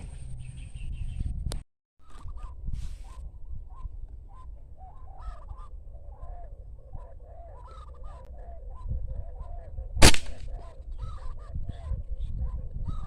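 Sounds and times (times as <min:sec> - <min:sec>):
birds calling: 0:03.8 - 0:11.8
airgun shot: 0:10.0 - 0:10.5.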